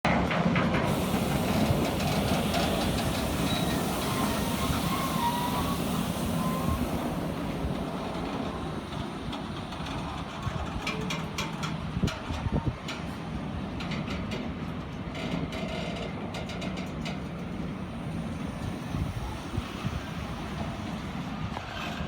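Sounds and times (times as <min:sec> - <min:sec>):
train wheels rumbling on rail: 0:00.1 - 0:22.0
faint thin wheel squeal: 0:03.2 - 0:07.3.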